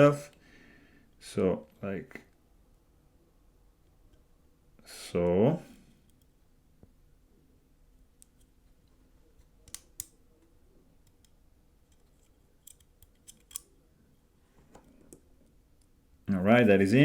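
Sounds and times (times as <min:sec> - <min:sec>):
small metal parts clicking: 0:11.9 - 0:13.7.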